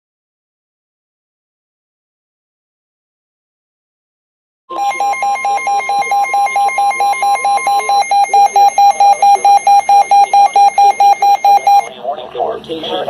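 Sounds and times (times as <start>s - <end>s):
rapidly pulsing alarm beeps: 4.7s - 11.9s
steady alert tone: 4.7s - 11.9s.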